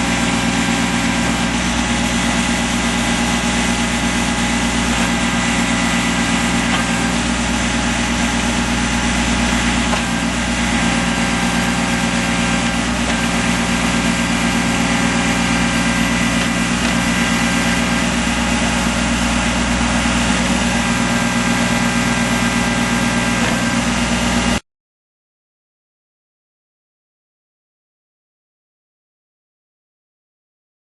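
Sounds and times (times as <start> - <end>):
diesel engine running: 0.0 - 24.6.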